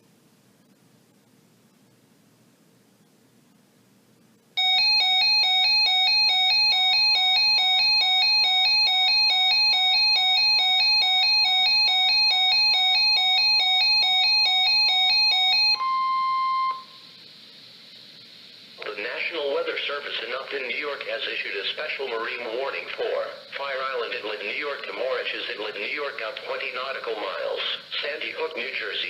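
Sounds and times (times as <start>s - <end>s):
rapid electronic alarm beeps: 4.6s - 17.2s
steady warning tone: 4.6s - 17.3s.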